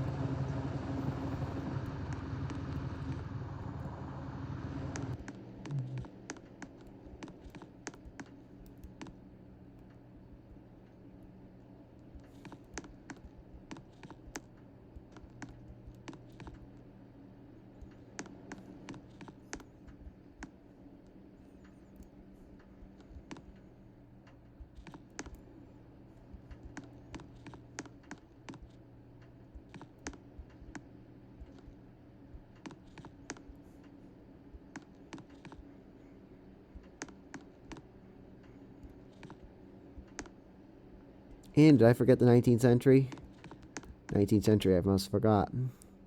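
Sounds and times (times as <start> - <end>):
ceiling fan motor hum: 0.0 - 46.0
light clicks and ticks: 26.2 - 35.7, 36.7 - 40.4.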